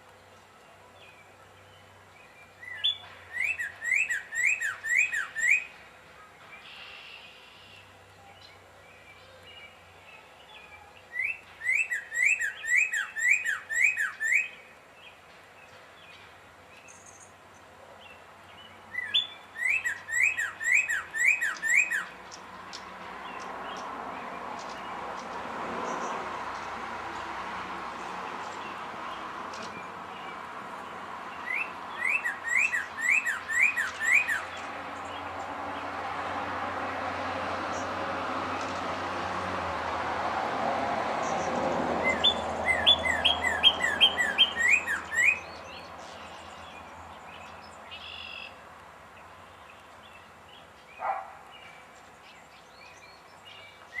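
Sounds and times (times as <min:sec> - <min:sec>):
bird singing whistled notes: 0:01.1 - 0:05.7, 0:06.6 - 0:14.7, 0:18.6 - 0:22.2, 0:31.4 - 0:34.7, 0:42.0 - 0:48.6.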